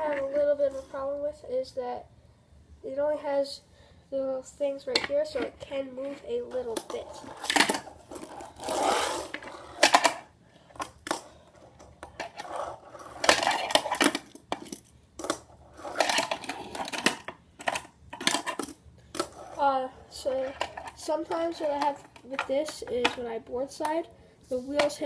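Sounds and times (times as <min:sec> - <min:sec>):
fingerboard wheels rolling: 0:05.0 - 0:23.8.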